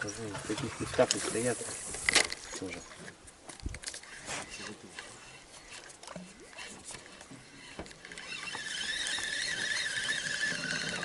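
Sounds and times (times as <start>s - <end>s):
reel clicks: 0.0s - 11.0s
spinning reel squealing whine: 7.5s - 11.0s.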